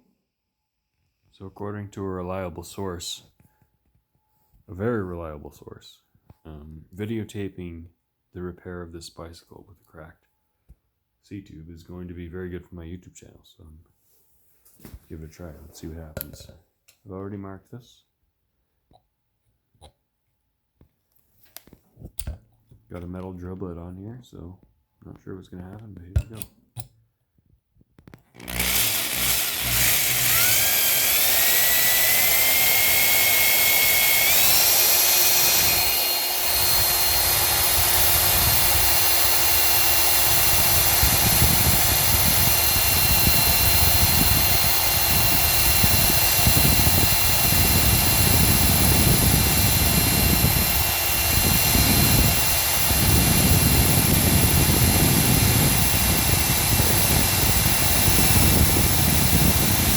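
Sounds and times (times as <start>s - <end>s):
electric drill whining into metal: 28.4s - 59.9s.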